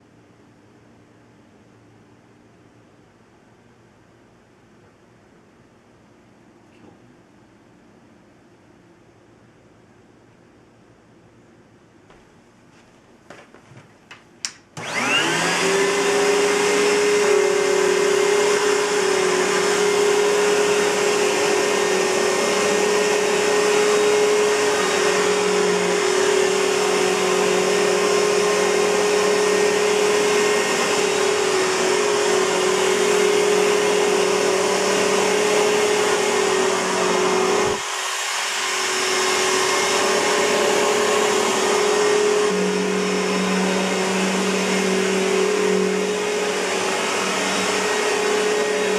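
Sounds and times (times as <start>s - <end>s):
vacuum cleaner motor humming: 14.8s - 48.9s.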